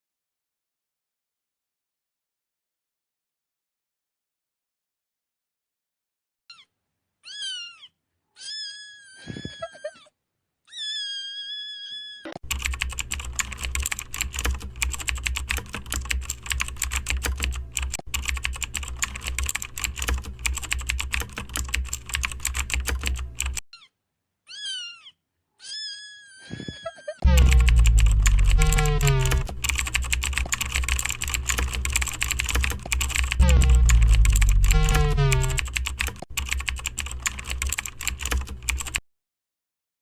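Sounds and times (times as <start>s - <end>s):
cat meowing: 6.5s - 10.0s, 10.7s - 12.4s, 24.5s - 26.8s
keyboard typing: 12.4s - 23.6s, 27.2s - 39.0s.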